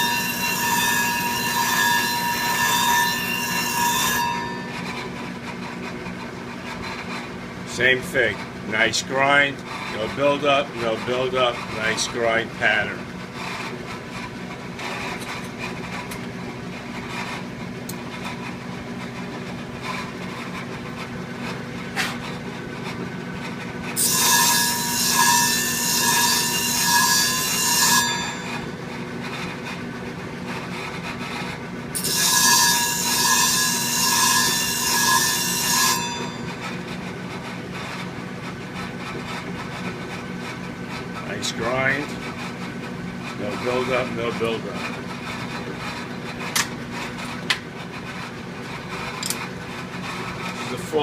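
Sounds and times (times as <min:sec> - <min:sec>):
blade grinding on sharpening wheel: 0:00.0 - 0:16.1, 0:23.9 - 0:29.8, 0:30.5 - 0:38.0.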